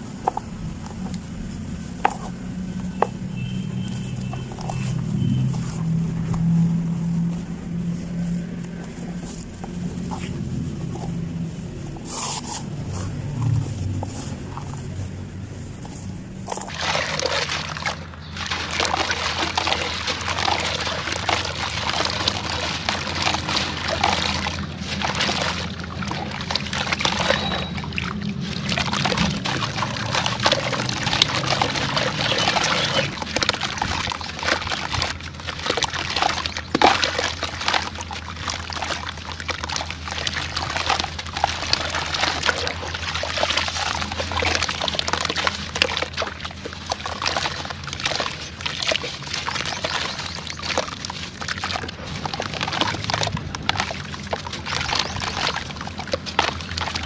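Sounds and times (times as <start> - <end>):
grains pouring and trickling: 16.5 - 57.0.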